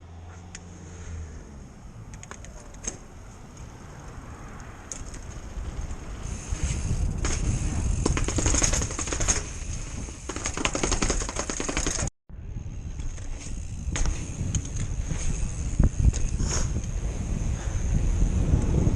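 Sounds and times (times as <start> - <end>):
bicycle fork rattling and knocking: 4.9 - 12.1.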